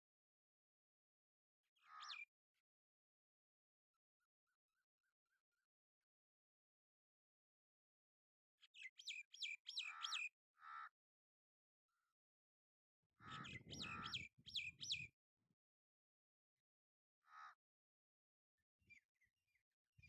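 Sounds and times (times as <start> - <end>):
babbler bird calls: 13.2 - 15.0.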